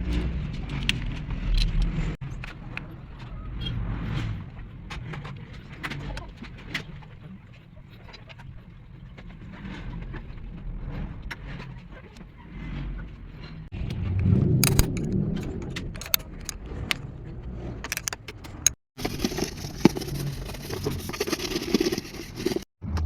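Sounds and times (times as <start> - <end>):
car engine rumbling: 8.3 - 23.0
metallic clinks and clicks: 14.6 - 17.0, 17.8 - 18.8.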